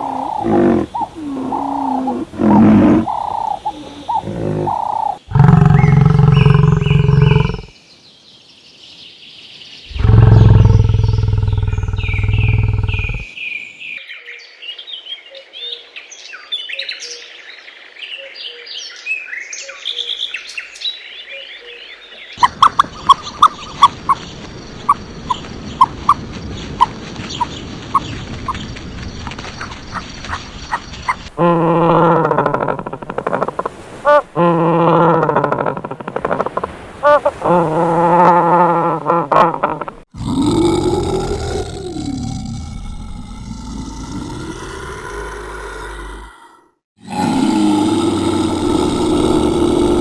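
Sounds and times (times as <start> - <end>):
deep drawn-out animal calls: 0.0 - 7.7, 9.9 - 13.3, 31.4 - 50.0
birds chirping and twittering: 0.0 - 31.3.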